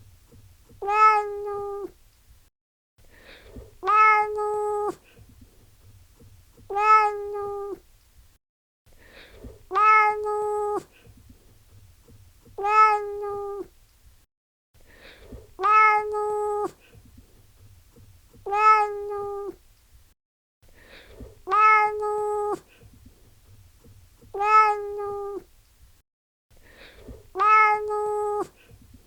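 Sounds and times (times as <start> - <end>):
cat meowing: 0.8 - 1.9, 3.8 - 5.0, 6.6 - 7.8, 9.7 - 10.9, 12.5 - 13.7, 15.6 - 16.8, 18.4 - 19.6, 21.5 - 22.6, 24.3 - 25.5, 27.3 - 28.5.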